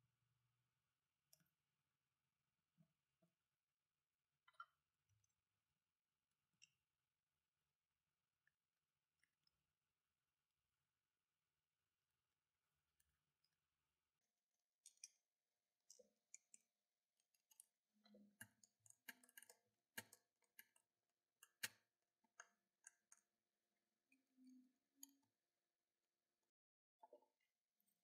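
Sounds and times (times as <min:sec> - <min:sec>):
faint small clicks and taps: 0:01.3 - 0:01.6, 0:04.4 - 0:05.5, 0:14.4 - 0:23.4.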